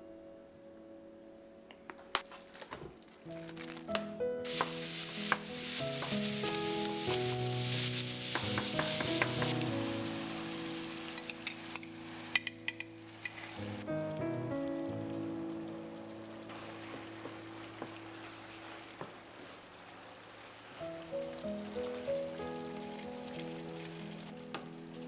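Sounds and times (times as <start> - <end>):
soft background music: 0.0 - 19.2, 20.8 - 25.0
food sizzling in a frying pan: 4.4 - 14.0.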